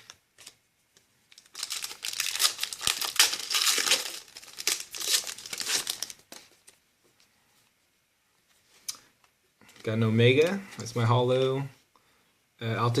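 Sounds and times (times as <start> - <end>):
foil wrapper crinkling and tearing: 1.3 - 6.5.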